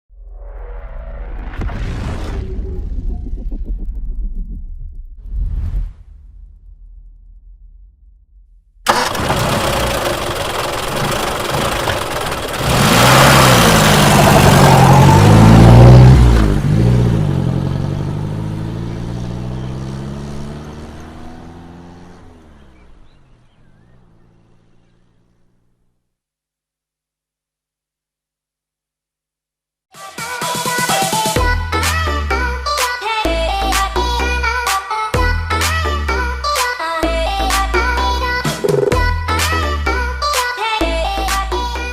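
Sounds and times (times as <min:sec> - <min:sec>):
bus engine revving and pulling away: 0:08.9 - 0:25.8.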